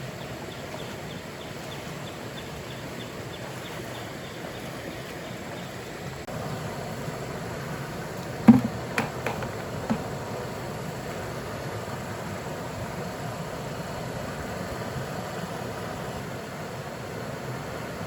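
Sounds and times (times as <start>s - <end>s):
sharp knocks: 8.5s - 10.1s.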